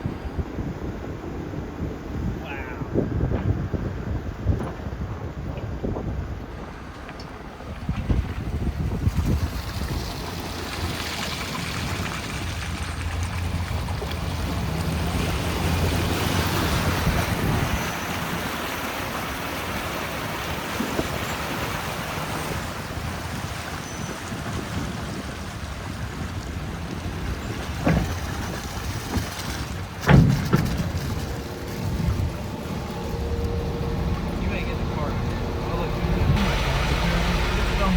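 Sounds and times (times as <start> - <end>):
wind on microphone: 0.0 - 6.8, 7.5 - 37.9
ferry engine running: 3.5 - 23.8, 25.4 - 37.9
rushing water: 6.5 - 37.9
sharp knocks: 30.0 - 32.0.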